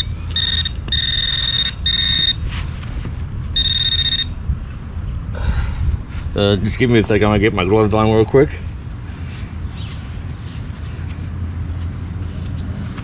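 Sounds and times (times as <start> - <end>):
metal detector beeping: 0.0 - 2.6, 3.5 - 4.4
wind rumble on microphone: 0.0 - 13.0.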